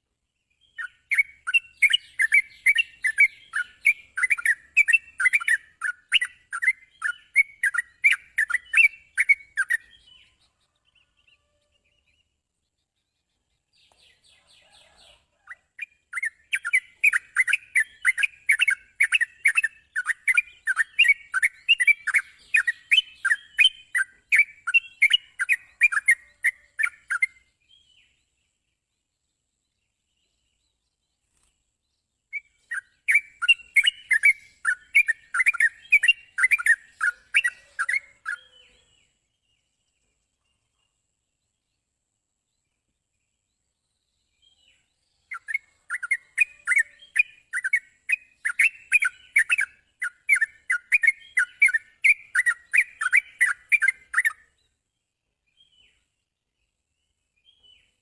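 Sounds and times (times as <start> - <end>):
bird chirping song: 0.0 - 58.0.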